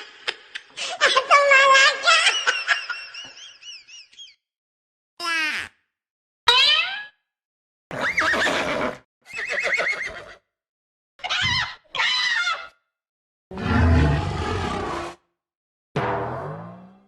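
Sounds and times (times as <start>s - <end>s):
horse whinnying: 7.9s - 10.4s.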